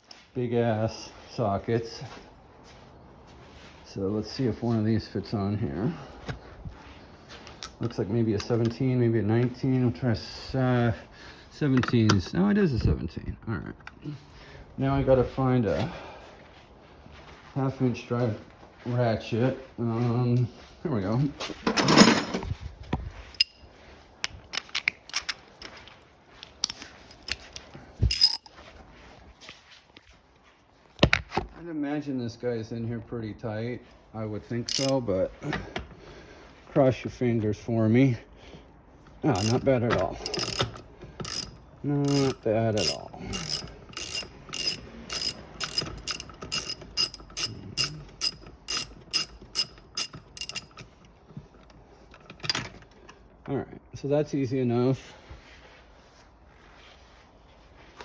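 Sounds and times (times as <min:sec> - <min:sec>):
metal tools clinking: 0:21.6 - 0:22.4, 0:23.4 - 0:23.8, 0:24.6 - 0:25.8, 0:26.6 - 0:28.6, 0:34.6 - 0:35.2, 0:39.2 - 0:51.1
ratchet clicking: 0:28.1 - 0:28.5, 0:34.7 - 0:35.0, 0:39.4 - 0:50.8
ringing metal clink: 0:28.1 - 0:28.5, 0:34.7 - 0:35.0, 0:39.4 - 0:39.6, 0:40.2 - 0:41.5, 0:42.1 - 0:50.7.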